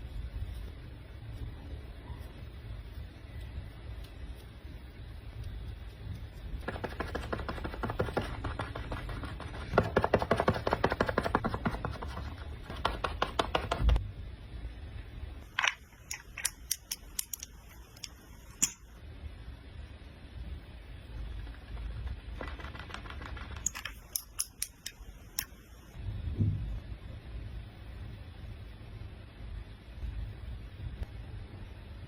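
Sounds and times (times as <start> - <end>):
scratchy makeup brush strokes: 0.0 - 13.8.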